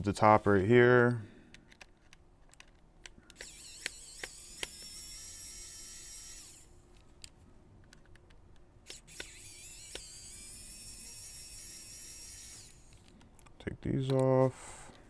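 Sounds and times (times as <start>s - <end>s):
screwdriver whine: 0.0s - 0.8s, 1.7s - 7.4s, 8.8s - 13.5s
screwdriver clicks: 1.5s - 15.0s.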